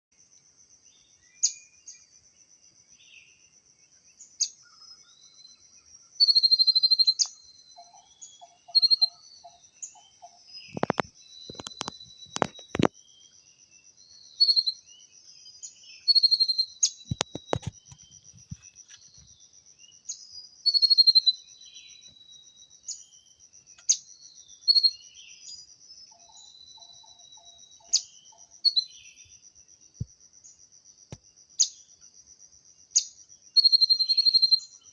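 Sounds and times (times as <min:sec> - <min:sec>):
small birds chirping: 0:00.7 - 0:34.9
decoy bird calling: 0:06.2 - 0:12.9.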